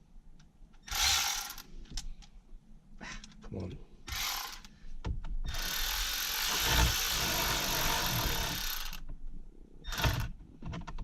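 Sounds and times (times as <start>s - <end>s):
power screwdriver running: 0.9s - 1.6s, 4.1s - 4.6s, 5.5s - 9.0s, 9.9s - 10.3s.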